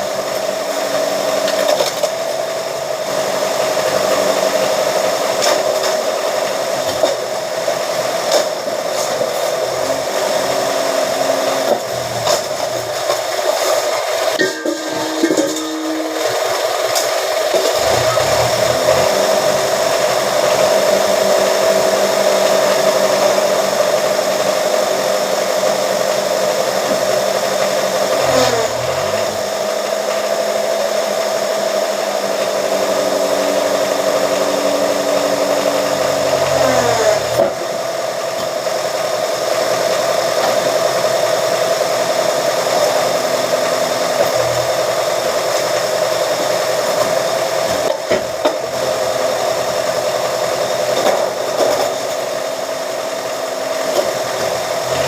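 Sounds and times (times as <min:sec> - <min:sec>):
press motor running: 0:32.4 - 0:38.2.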